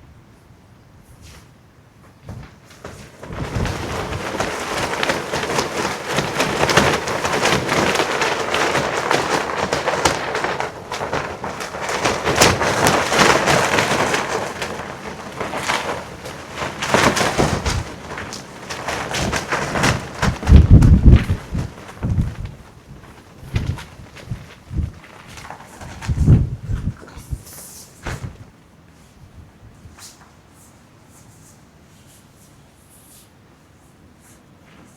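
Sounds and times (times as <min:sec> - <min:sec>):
clothing flapping and crackling: 0:01.2 - 0:32.6
wind buffeting microphone: 0:03.2 - 0:28.5.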